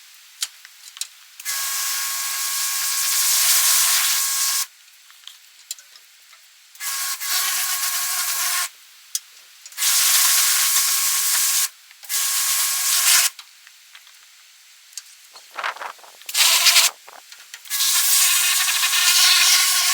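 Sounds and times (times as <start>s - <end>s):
pressure washer water hiss: 15.4s - 19.9s.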